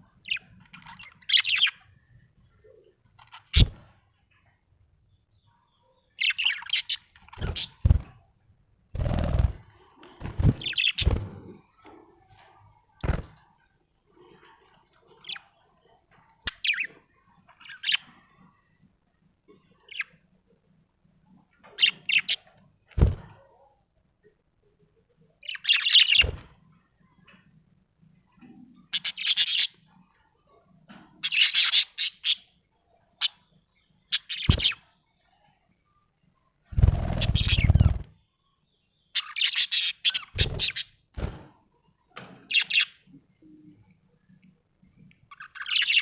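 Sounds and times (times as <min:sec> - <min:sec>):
budgerigar chirping: 0:37.1 - 0:38.0.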